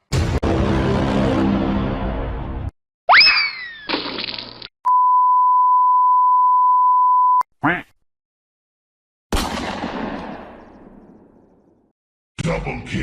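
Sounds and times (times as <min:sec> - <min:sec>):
censor bleep tone: 0:04.9 - 0:07.4.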